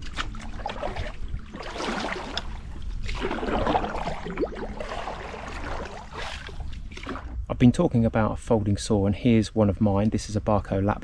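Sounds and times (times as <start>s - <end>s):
canoe paddle splashing in water: 0.0s - 7.4s.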